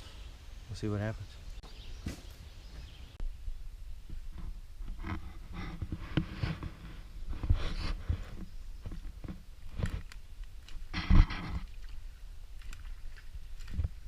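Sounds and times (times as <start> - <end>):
brush rustling: 4.0 - 14.0.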